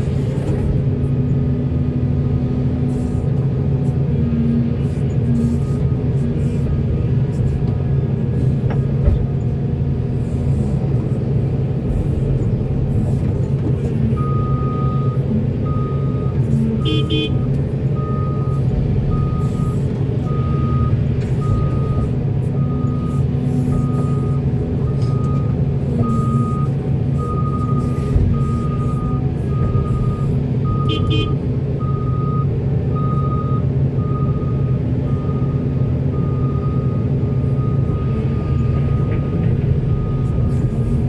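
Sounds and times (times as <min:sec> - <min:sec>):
diesel machinery droning: 0:00.0 - 0:41.0
reversing alarm beeping: 0:14.2 - 0:17.4, 0:18.0 - 0:41.0.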